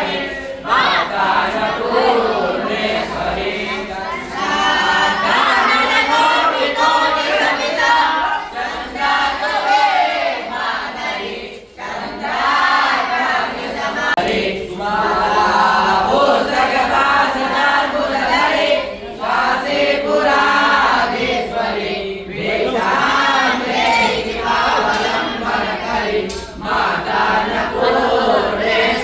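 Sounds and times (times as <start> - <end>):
group of voices chanting: 0.0 - 29.0.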